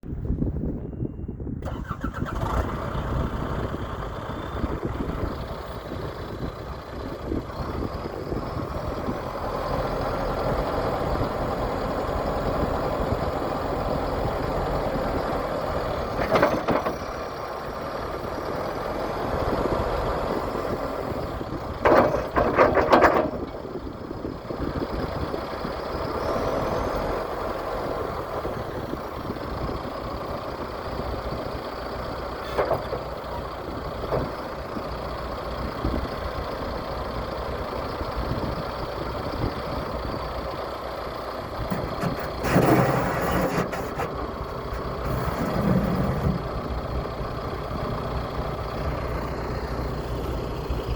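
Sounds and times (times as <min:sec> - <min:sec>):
diesel engine running: 0:01.4 - 0:50.9
loud engine bursts: 0:01.6 - 0:04.1.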